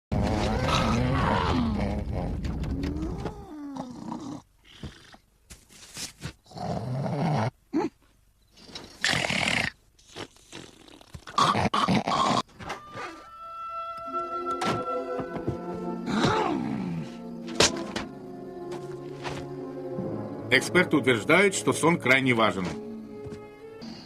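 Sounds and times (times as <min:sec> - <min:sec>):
cartoon man snoring loudly: 0:00.2 - 0:02.4.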